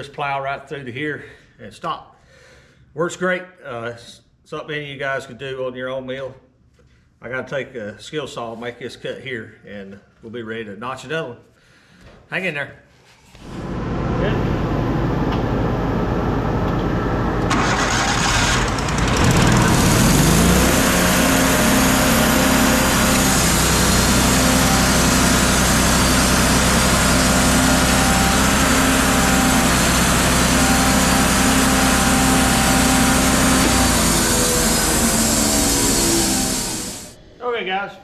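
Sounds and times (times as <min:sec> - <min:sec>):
power saw running: 0:13.4 - 0:37.2.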